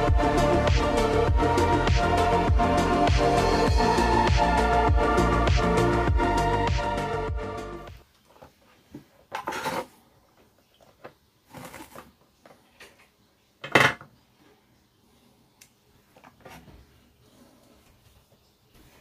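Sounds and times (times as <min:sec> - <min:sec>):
background music: 0:00.0 - 0:08.0.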